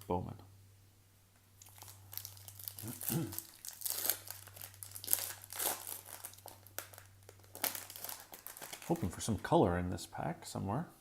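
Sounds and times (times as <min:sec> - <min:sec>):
plastic wrapper crinkling: 0:01.6 - 0:09.5.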